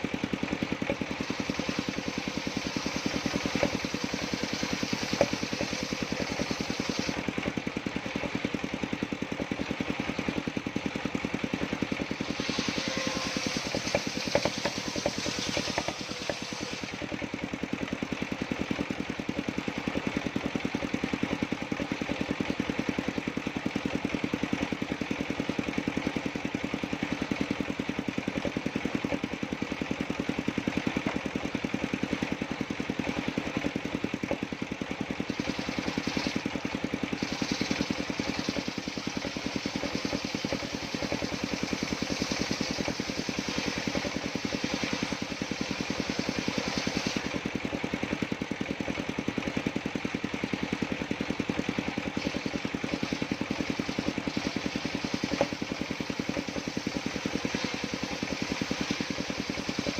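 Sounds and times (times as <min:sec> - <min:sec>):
saw blade cutting wood: 0:00.0 - 0:08.6, 0:11.2 - 0:17.8, 0:27.0 - 0:48.7, 0:51.5 - 0:59.9
sawmill engine running: 0:00.0 - 0:59.9.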